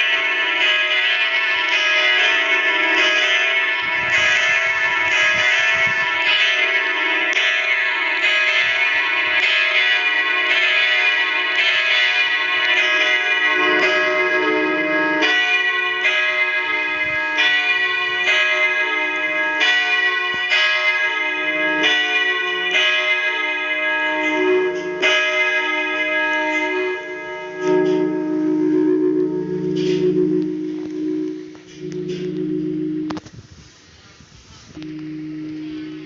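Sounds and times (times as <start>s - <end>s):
church bells ringing: 0.0s - 33.2s, 34.8s - 36.0s
low hum: 27.5s - 33.3s, 34.8s - 36.0s.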